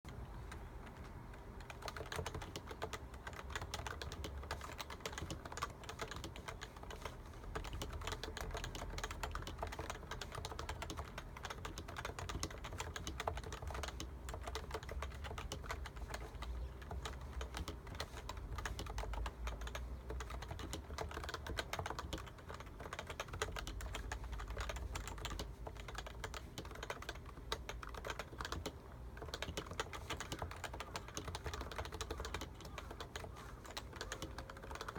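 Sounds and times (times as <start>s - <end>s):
fast keyboard typing: 0.1s - 34.9s.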